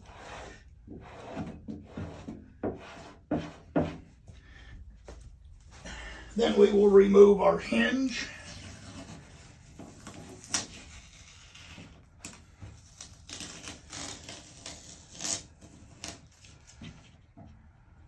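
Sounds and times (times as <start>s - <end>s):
tape crackling and rustling: 8.5s - 17.5s.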